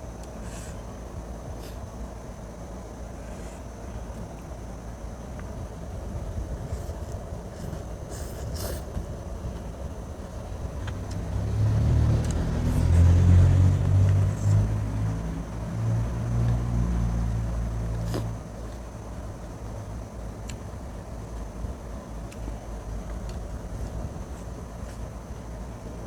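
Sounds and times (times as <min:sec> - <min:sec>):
vehicle engine rumbling: 0:05.2 - 0:20.3.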